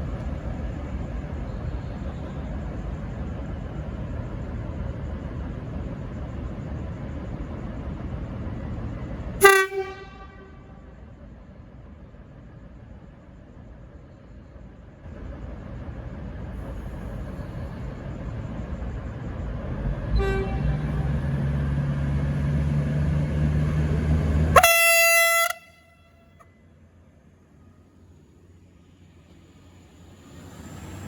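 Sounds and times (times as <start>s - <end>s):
diesel railcar engine: 0.0s - 31.0s
train horn: 9.4s - 11.0s, 20.1s - 21.4s, 24.5s - 26.5s.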